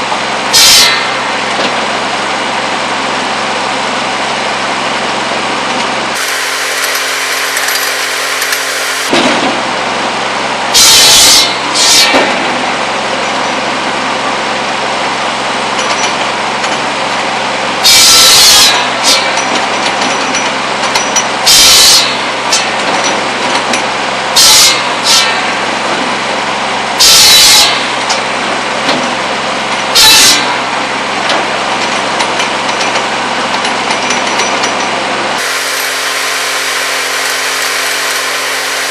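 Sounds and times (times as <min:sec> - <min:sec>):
buzz saw running: 0:06.1 - 0:09.2, 0:35.4 - 0:38.9.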